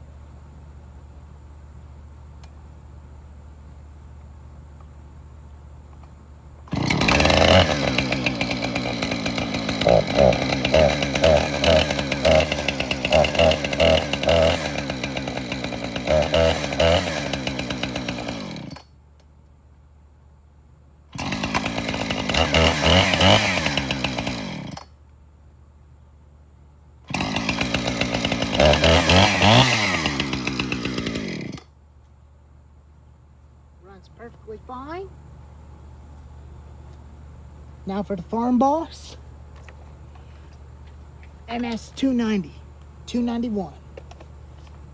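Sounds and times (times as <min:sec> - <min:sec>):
chainsaw revving: 0:06.7 - 0:18.8, 0:21.1 - 0:24.9, 0:27.1 - 0:31.7.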